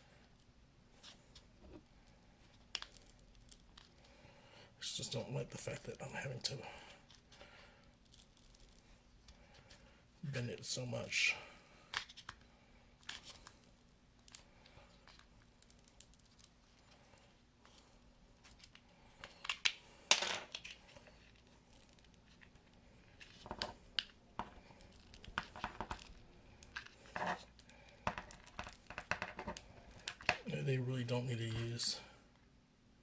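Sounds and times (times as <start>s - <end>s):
battery crinkling: 20.6s - 30.3s.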